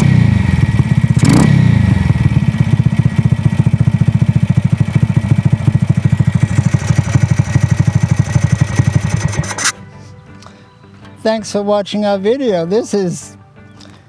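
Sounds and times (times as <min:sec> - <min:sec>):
motorcycle engine running: 0:00.0 - 0:09.8.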